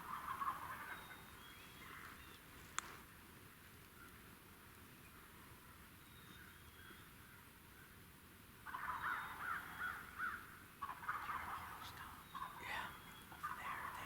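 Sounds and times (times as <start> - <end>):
crows cawing: 8.7 - 11.7.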